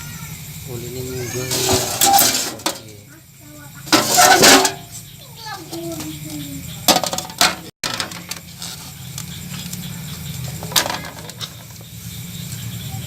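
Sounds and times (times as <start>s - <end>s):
tools and parts clattering: 1.5s - 3.0s, 3.8s - 5.0s, 6.9s - 11.8s.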